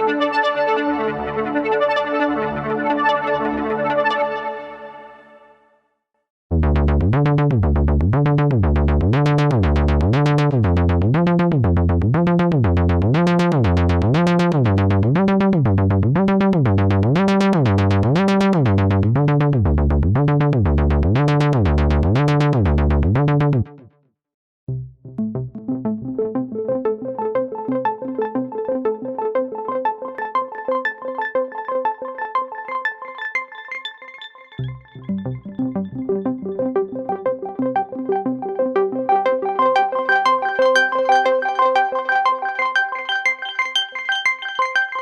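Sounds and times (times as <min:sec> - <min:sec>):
synthesizer filter sweeping pad: 0:25.2 - 0:45.0.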